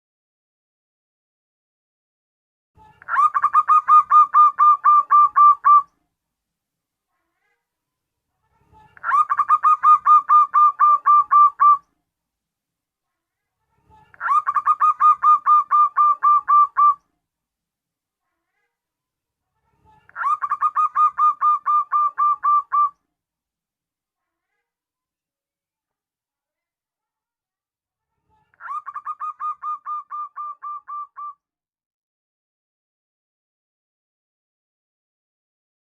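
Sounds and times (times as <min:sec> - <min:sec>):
dove calling: 0:03.0 - 0:05.9, 0:09.0 - 0:11.8, 0:14.2 - 0:17.0, 0:20.1 - 0:22.9, 0:28.6 - 0:31.4.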